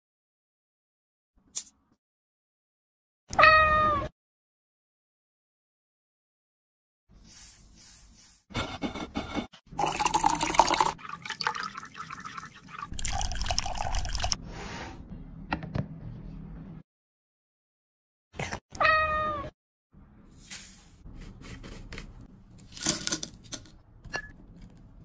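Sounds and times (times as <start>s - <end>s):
liquid pouring and dripping: 9.8s - 14.4s.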